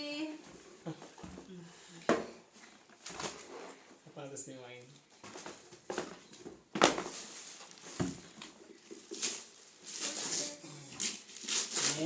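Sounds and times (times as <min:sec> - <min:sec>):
packaging rustling and crinkling: 0:02.6 - 0:03.9, 0:04.8 - 0:12.0.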